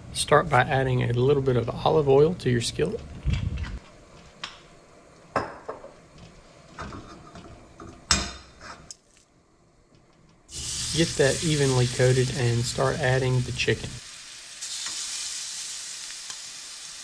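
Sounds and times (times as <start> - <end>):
cookware knocks and clinks: 5.4 - 6.0.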